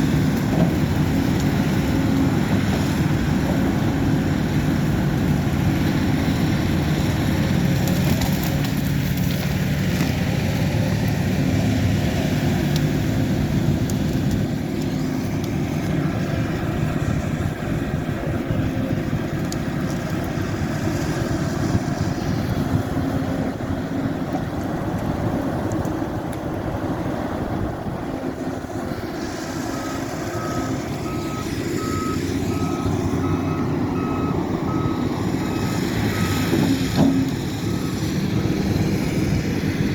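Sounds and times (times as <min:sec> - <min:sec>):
earthmoving machine diesel engine: 0:00.0 - 0:39.9
reversing alarm beeps: 0:29.7 - 0:38.2.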